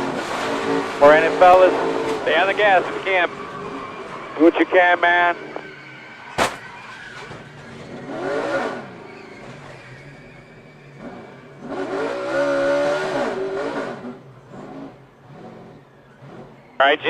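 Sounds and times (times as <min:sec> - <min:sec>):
drone of cars on track: 0:00.0 - 0:17.0
race cars passing at speed: 0:00.0 - 0:17.0.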